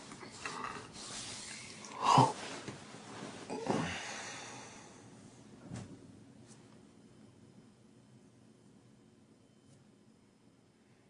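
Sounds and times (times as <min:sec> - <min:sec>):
person exhaling breathily: 0:03.5 - 0:05.0.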